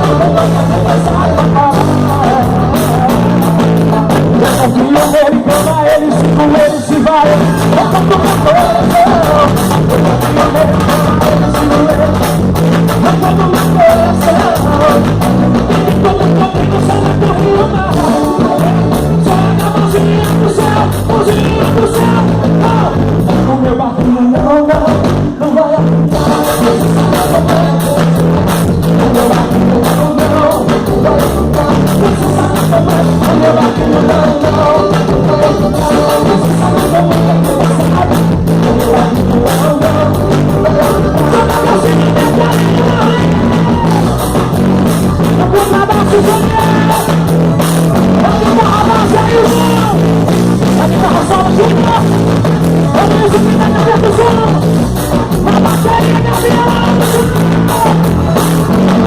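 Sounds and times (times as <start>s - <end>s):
drum beat: 0.0s - 25.4s, 26.1s - 59.0s
bass line: 0.0s - 59.0s
person singing: 0.0s - 59.0s.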